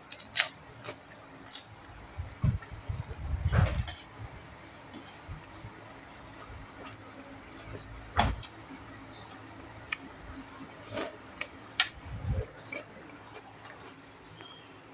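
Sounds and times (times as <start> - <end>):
chewing and mouth clicks: 9.8 - 10.6, 12.4 - 14.9.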